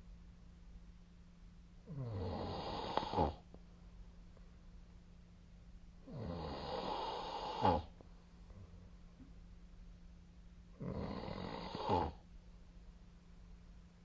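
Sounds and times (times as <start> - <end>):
faint steady hum: 0.0 - 14.0
person snoring: 1.9 - 3.4, 6.1 - 7.9, 10.8 - 12.2.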